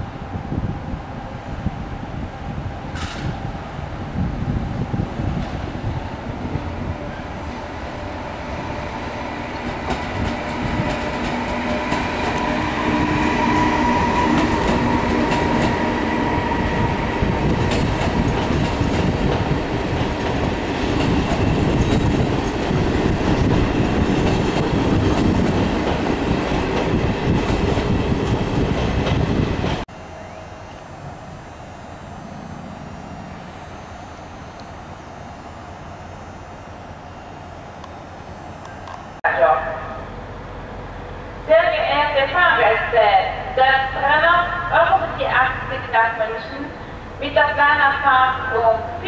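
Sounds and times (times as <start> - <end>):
train rumbling past: 0.0 - 49.0
train whine: 0.0 - 49.0.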